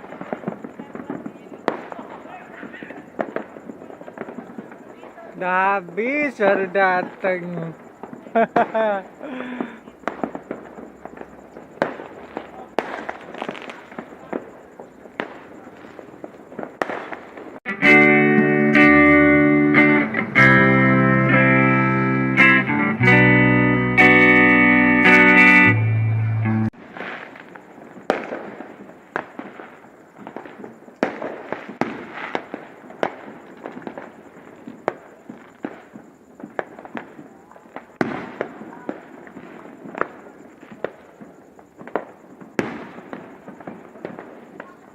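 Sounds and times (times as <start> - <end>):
fireworks bangs and pops: 0.0 - 17.7, 26.7 - 44.9.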